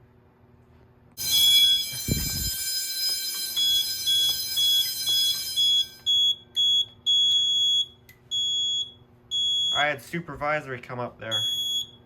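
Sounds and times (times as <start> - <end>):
panel buzzer beeping: 1.2 - 9.8, 11.4 - 12.0
high-pitched fire alarm tone: 1.2 - 9.9, 11.3 - 12.0.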